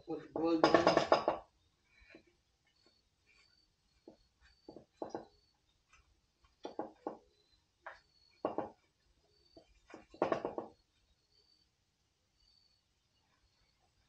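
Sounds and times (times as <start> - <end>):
hard objects knocking: 0.3 - 1.5, 4.0 - 5.4, 6.6 - 8.9, 9.6 - 10.8.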